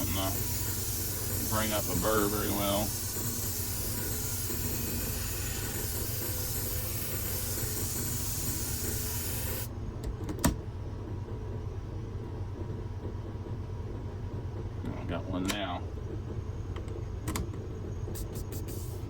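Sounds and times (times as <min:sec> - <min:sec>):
blade grinding hiss: 0:00.0 - 0:09.7
machine low hum: 0:00.0 - 0:19.0.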